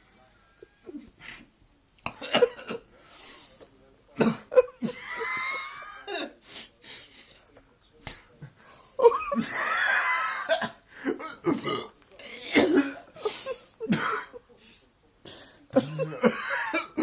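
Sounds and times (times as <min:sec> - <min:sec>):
man retching hiccups: 0:15.7 - 0:16.4.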